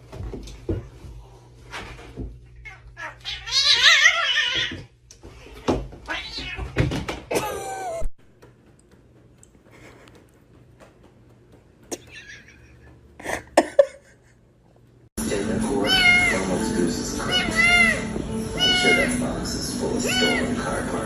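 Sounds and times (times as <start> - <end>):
cat meowing: 6.1 - 6.7, 15.8 - 16.5, 17.2 - 19.2, 20.1 - 20.5.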